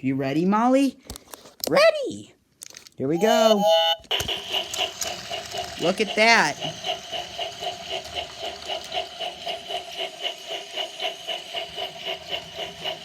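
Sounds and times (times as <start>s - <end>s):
toy train motor whine: 3.2s - 13.0s.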